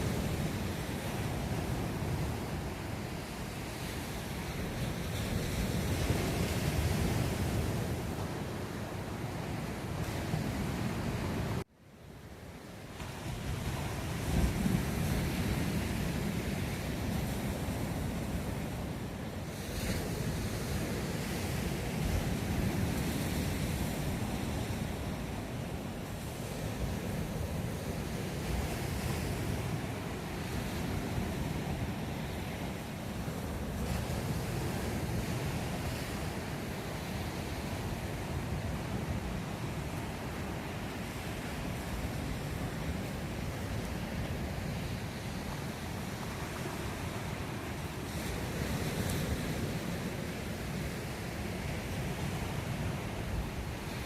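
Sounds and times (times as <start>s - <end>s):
wind buffeting microphone: 13.1s - 54.0s.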